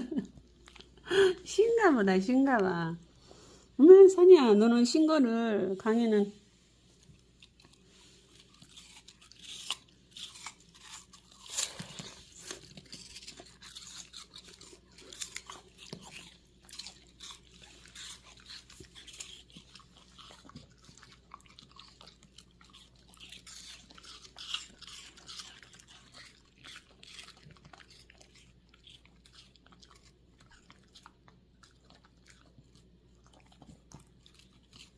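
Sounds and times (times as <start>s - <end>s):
dog crunching apple: 7.0s - 34.9s.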